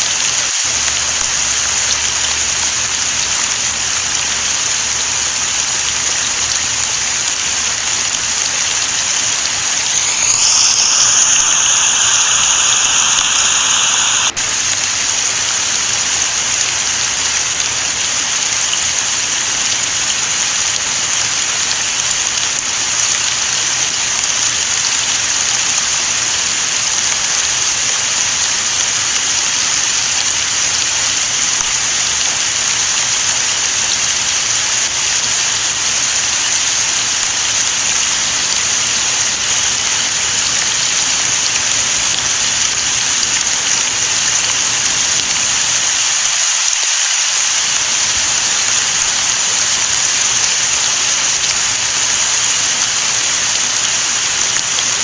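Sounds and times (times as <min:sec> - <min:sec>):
steady rain falling: 0:00.0 - 0:55.0
high pitched tone: 0:09.7 - 0:14.4.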